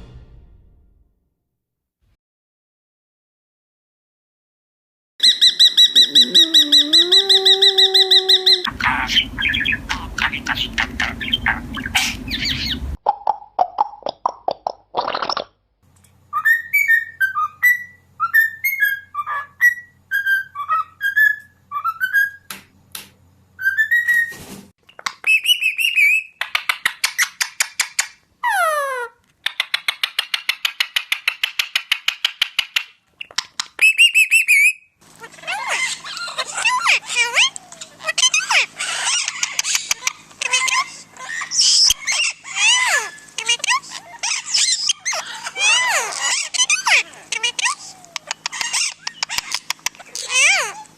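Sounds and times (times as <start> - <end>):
pet bird whistling and chirping: 5.2 - 12.9, 16.3 - 22.5, 23.6 - 24.3, 24.9 - 50.9.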